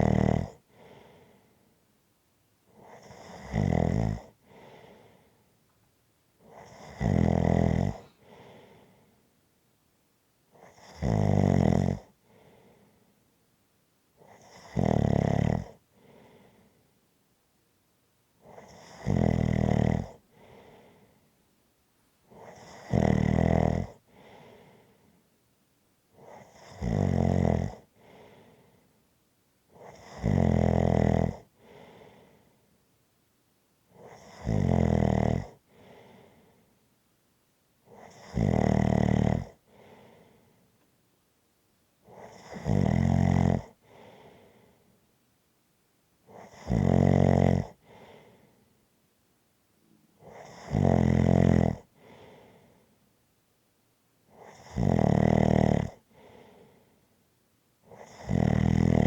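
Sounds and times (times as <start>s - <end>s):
rattling snores: 0.0s - 0.6s, 2.8s - 4.4s, 6.5s - 8.2s, 10.6s - 12.1s, 14.2s - 15.8s, 18.5s - 20.2s, 22.3s - 24.0s, 26.2s - 27.9s, 29.8s - 31.5s, 34.0s - 35.6s, 37.9s - 39.6s, 42.1s - 43.8s, 46.3s - 47.8s, 50.2s - 51.9s, 54.3s - 56.0s, 57.9s - 59.0s.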